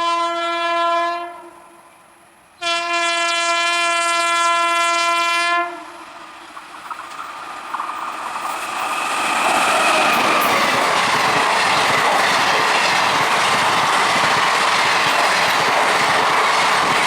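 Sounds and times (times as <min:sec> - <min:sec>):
train horn blast: 0:00.0 - 0:01.8, 0:02.6 - 0:06.0
rumble of approaching train: 0:00.0 - 0:17.0.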